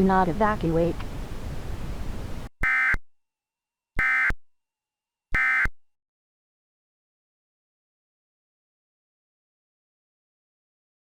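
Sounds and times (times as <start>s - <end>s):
steady hiss: 0.0s - 2.5s.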